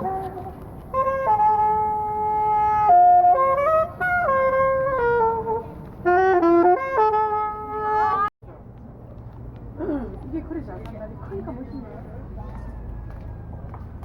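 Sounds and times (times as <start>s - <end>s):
solo saxophone melody: 0.0s - 8.3s.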